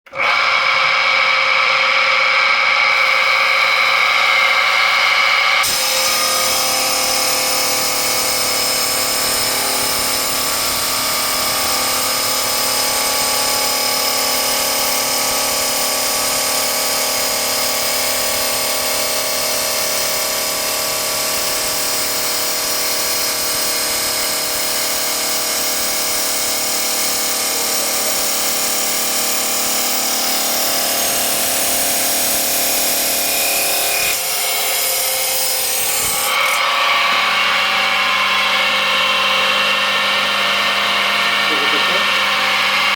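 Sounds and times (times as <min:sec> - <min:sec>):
cutting disc whining: 0:32.6 - 0:42.9.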